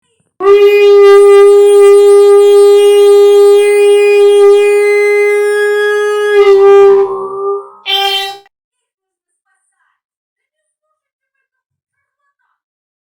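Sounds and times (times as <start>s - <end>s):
locomotive horn blast: 0.4s - 8.5s.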